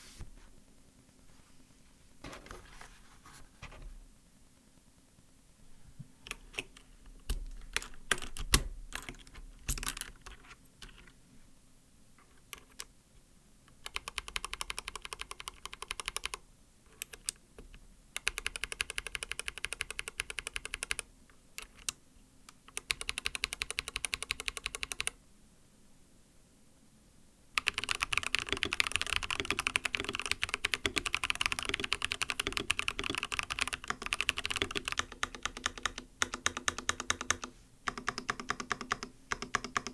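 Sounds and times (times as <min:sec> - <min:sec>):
keyboard keystrokes: 0:06.2 - 0:11.2, 0:27.6 - 0:39.9.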